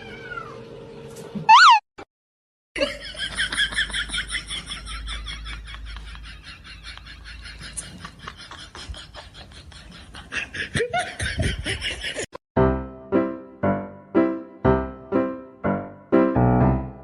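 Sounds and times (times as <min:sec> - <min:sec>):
person laughing: 0:02.8 - 0:12.3
loud piano chords: 0:12.6 - 0:17.0.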